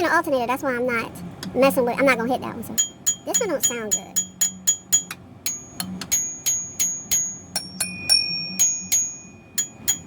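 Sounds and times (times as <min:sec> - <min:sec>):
metal tool tapping pulleys: 0:02.8 - 0:10.0.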